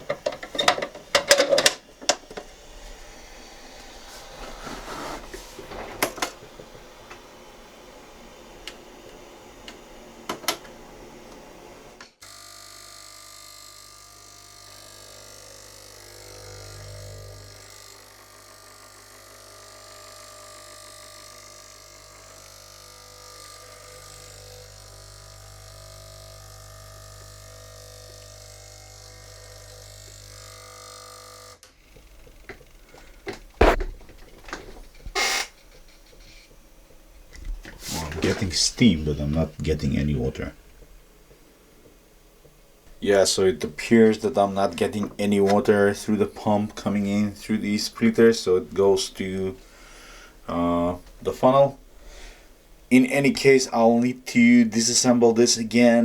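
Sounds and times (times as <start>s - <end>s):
clicks and knocks: 0.0s - 2.5s
espresso machine pump humming: 0.0s - 52.9s.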